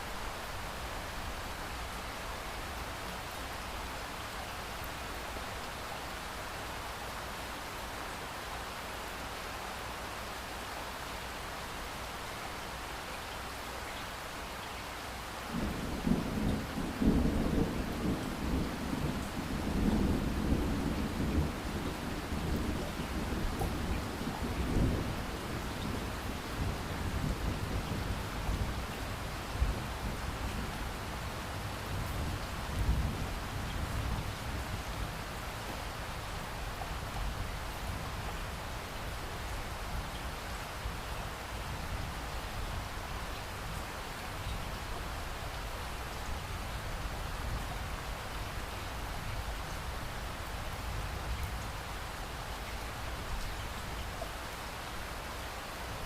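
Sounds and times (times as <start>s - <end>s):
steady rain hiss: 0.0s - 56.0s
low rolling thunder: 15.5s - 35.2s.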